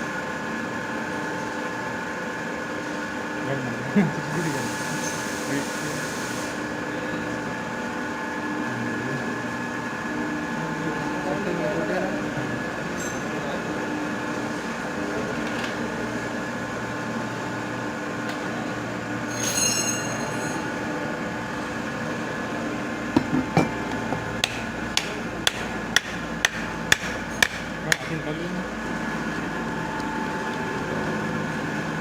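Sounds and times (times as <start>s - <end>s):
steady machine hum: 0.0s - 32.0s
ringing metallic clink: 19.3s - 20.8s
hammer striking metal: 24.4s - 28.2s.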